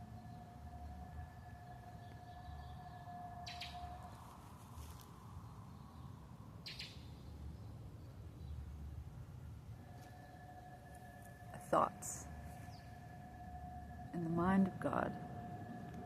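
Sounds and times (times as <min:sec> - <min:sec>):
low background hum: 0:00.0 - 0:16.0.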